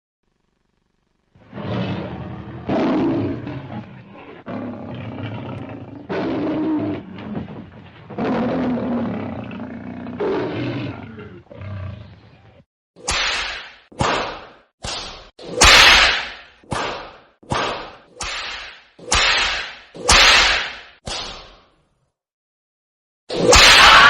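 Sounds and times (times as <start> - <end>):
big cat roars: 1.4 - 12.6.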